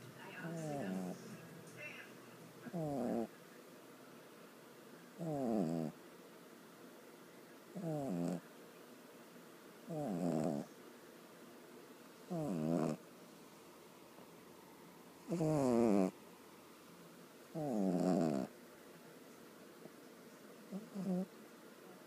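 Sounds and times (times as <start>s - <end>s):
dog snoring: 0.4s - 1.3s, 2.7s - 3.3s, 5.2s - 6.0s, 7.8s - 8.4s, 9.9s - 10.8s, 12.3s - 13.0s, 15.2s - 16.2s, 17.5s - 18.5s, 20.7s - 21.3s.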